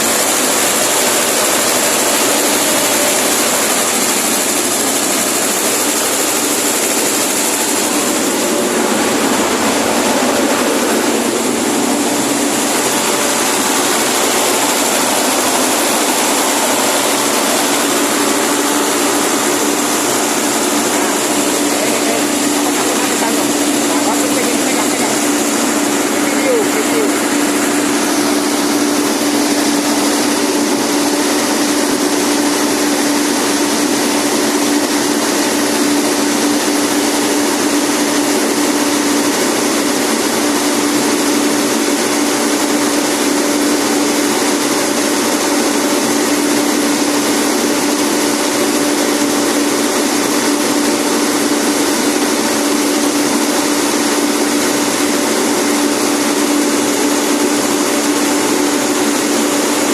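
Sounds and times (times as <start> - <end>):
small engine humming: 0.0 - 59.9
steady whirring: 0.0 - 59.9.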